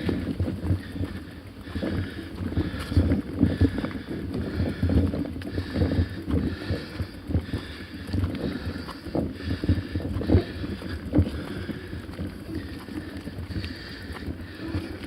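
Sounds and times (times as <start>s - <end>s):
bike knocking and rattling: 0.0s - 15.0s.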